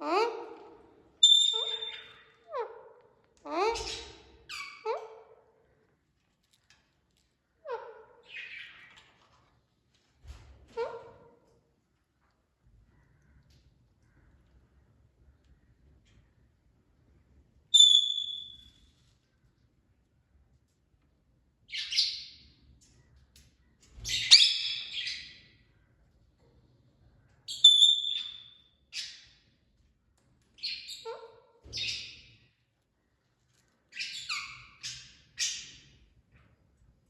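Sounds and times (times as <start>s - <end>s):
parrot squawking: 1.2s - 2.8s.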